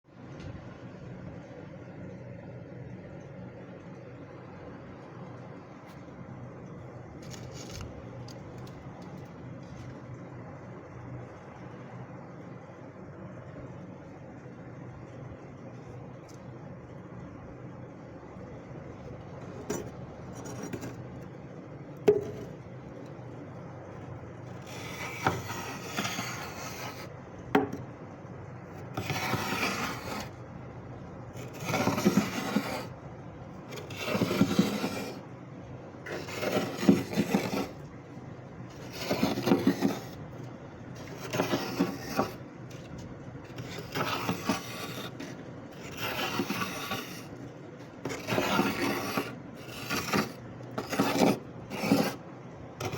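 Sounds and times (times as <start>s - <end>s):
scraping frost off freezer: 7.2s - 9.9s, 19.1s - 23.2s, 24.4s - 27.7s, 28.6s - 30.5s, 31.3s - 33.0s, 33.6s - 52.9s.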